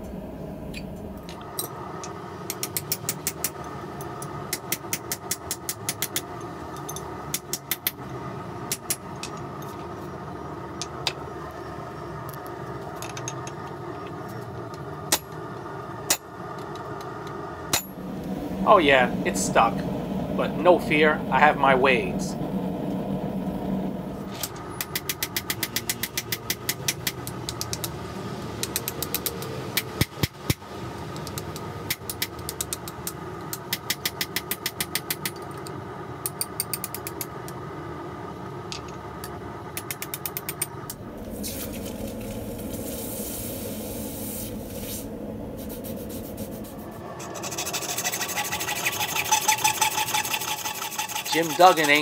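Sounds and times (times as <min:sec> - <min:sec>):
steady roar: 0:17.2 - 0:24.3, 0:40.9 - 0:52.0
hacksaw rasping through steel: 0:47.2 - 0:52.0.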